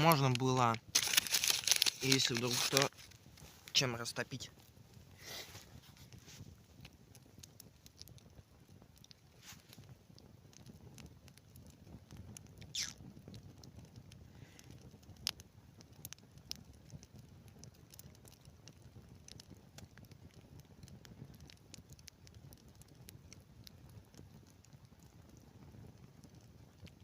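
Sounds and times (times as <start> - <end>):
campfire crackling and popping: 0.0 - 27.0
falling hiss: 5.2 - 5.7.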